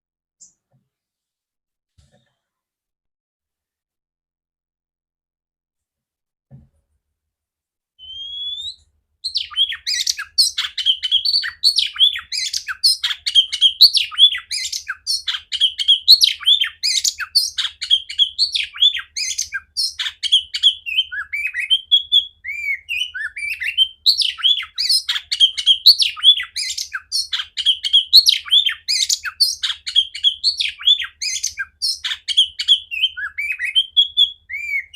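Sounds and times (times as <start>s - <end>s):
bird singing whistles and chirps: 8.0s - 34.9s.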